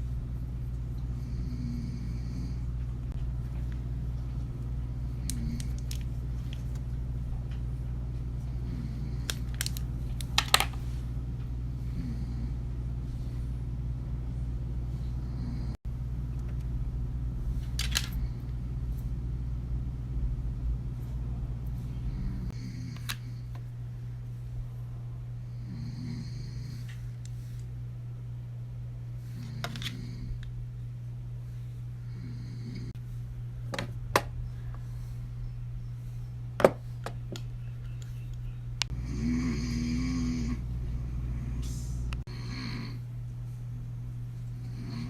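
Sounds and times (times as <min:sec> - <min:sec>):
steady low hum: 0:00.0 - 0:45.0
man snoring: 0:01.2 - 0:02.7, 0:22.1 - 0:23.0, 0:25.6 - 0:26.8, 0:32.1 - 0:32.9, 0:38.9 - 0:40.7, 0:42.3 - 0:43.0, 0:44.6 - 0:45.0.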